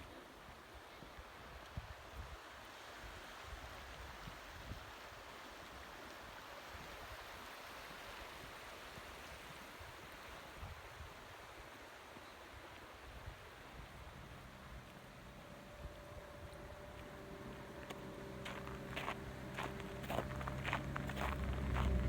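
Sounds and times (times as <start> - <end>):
flowing stream: 0.0 - 22.0
wind rumble on microphone: 13.2 - 22.0.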